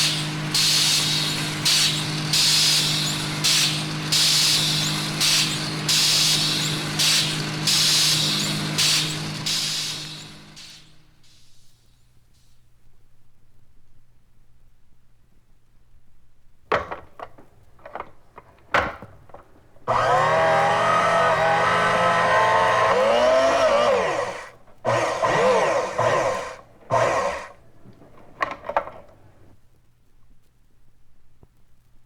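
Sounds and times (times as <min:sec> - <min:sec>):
electric motor running: 0:00.0 - 0:10.8, 0:19.9 - 0:29.5
appliance clicks and knocks: 0:16.7 - 0:29.5.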